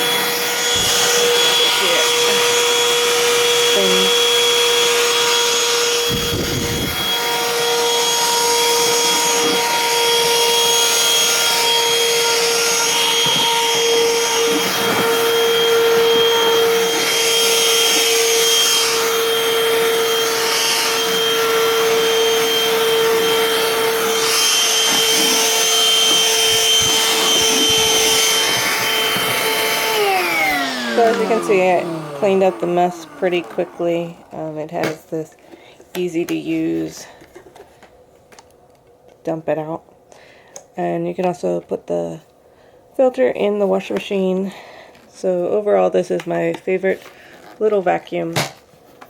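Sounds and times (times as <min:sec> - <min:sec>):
handheld vacuum motor whine: 0:00.0 - 0:35.4.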